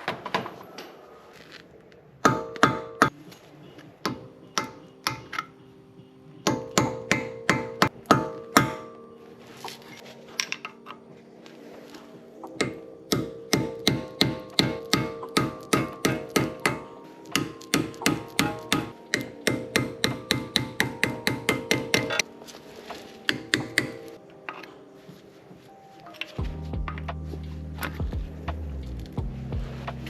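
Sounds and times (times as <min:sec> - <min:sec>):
hammer striking steel: 0:02.2 - 0:03.3, 0:04.0 - 0:05.7, 0:06.4 - 0:09.1, 0:12.5 - 0:22.3, 0:23.2 - 0:24.7.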